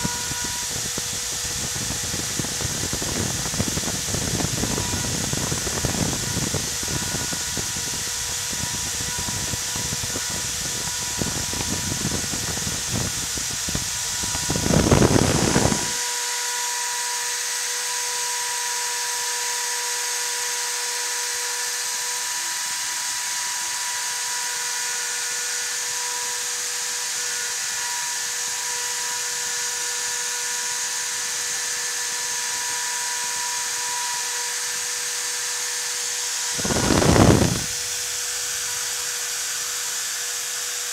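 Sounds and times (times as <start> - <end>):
bit cutting rough noise: 0.0 - 16.0, 36.3 - 38.9
router spindle high whine: 0.0 - 40.9.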